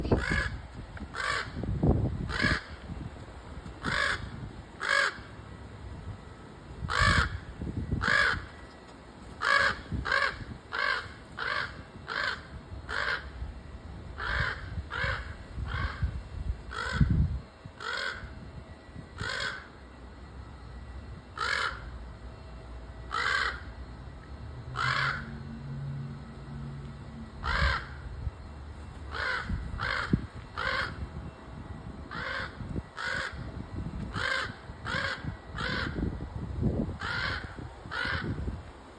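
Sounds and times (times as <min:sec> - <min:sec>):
crows cawing: 0:00.0 - 0:03.1, 0:03.8 - 0:05.5, 0:06.8 - 0:13.5, 0:14.2 - 0:17.2, 0:17.8 - 0:18.3, 0:19.2 - 0:19.7, 0:21.4 - 0:21.9, 0:23.1 - 0:23.7, 0:24.8 - 0:25.4, 0:27.4 - 0:28.0, 0:29.1 - 0:31.0, 0:32.1 - 0:33.5, 0:34.1 - 0:36.1, 0:37.0 - 0:38.6.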